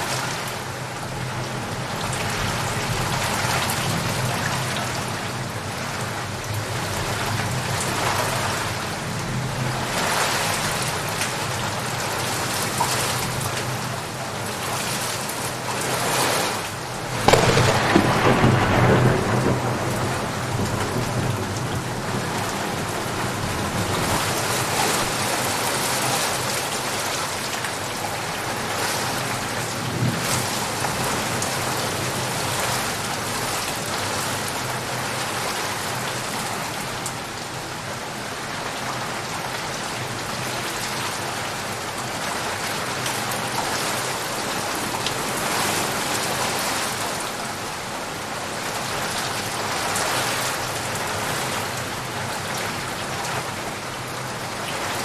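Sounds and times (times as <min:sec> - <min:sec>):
steady rain falling: 0:00.0 - 0:55.0
thunder rumbling: 0:17.1 - 0:25.2.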